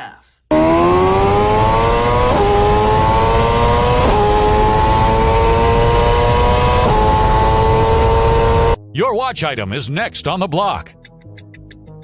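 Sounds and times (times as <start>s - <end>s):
high-revving engine accelerating: 0.5s - 8.8s.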